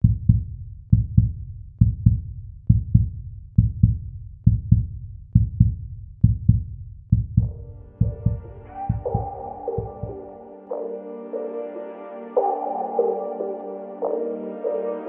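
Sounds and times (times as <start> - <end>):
heartbeat-like double thumps: 0.0 - 10.3.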